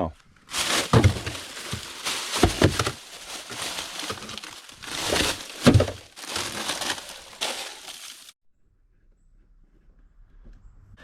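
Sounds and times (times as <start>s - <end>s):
dull thumps: 0.5s - 8.3s
plastic bag rustling: 0.5s - 8.4s.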